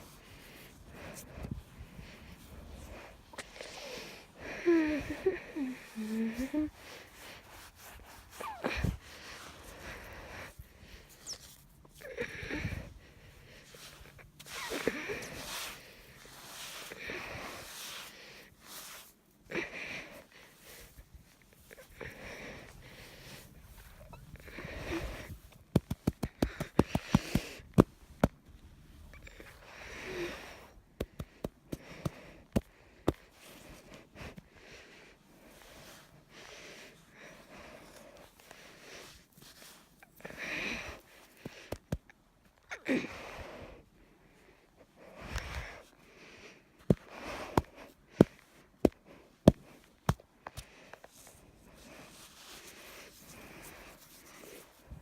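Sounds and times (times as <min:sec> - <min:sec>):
person breathing heavily: 0:00.0 - 0:11.2, 0:12.0 - 0:25.5, 0:26.3 - 0:27.8, 0:29.3 - 0:39.2
heavy breathing: 0:00.0 - 0:11.3, 0:21.8 - 0:25.5.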